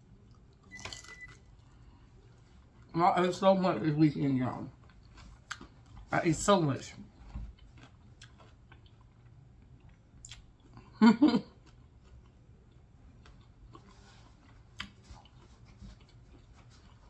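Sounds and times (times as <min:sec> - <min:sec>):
person chewing food: 0:04.7 - 0:06.1, 0:07.1 - 0:17.0.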